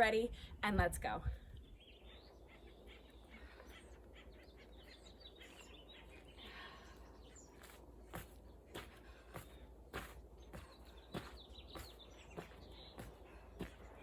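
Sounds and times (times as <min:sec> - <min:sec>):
small birds chirping: 0:01.4 - 0:14.0.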